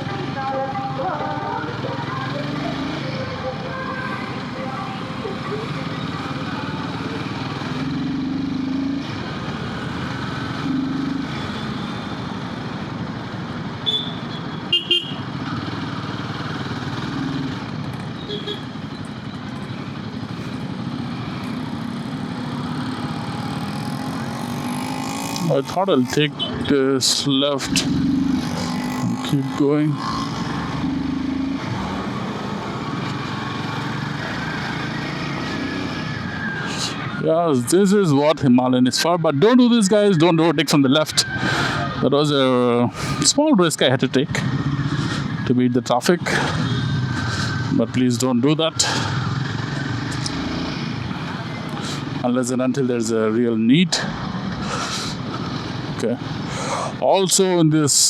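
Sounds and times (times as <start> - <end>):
motorcycle engine running: 0.0 - 36.6
road and wind noise: 0.0 - 58.0
low vehicle horn: 13.8 - 15.3, 18.2 - 18.8
high-pitched horn toots: 13.9 - 15.2.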